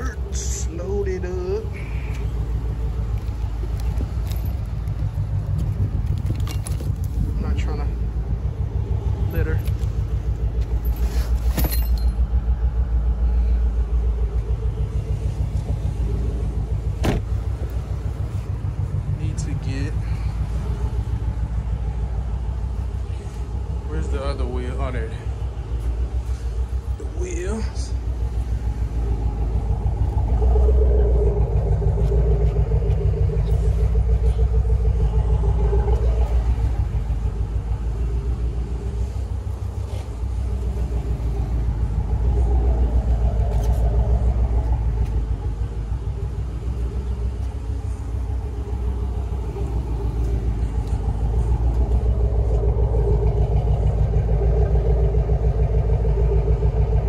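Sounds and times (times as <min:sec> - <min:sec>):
vehicle engine running: 0:00.0 - 0:57.0.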